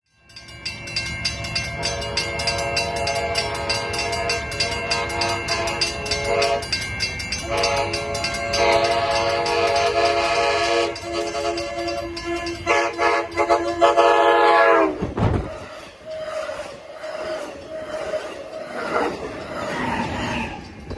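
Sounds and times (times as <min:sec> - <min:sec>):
train air horn chord: 0:01.8 - 0:06.7, 0:07.4 - 0:15.0.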